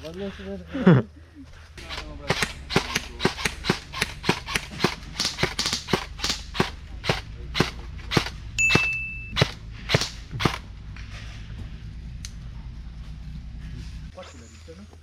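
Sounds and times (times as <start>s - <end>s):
airsoft gun shots: 1.9s - 10.6s
short high beep: 8.6s - 9.4s.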